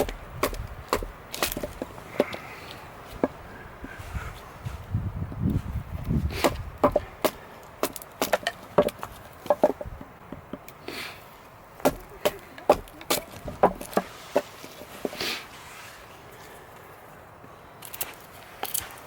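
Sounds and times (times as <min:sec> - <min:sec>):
knife chopping into wood: 0:00.0 - 0:02.4, 0:06.3 - 0:10.7, 0:11.8 - 0:15.2.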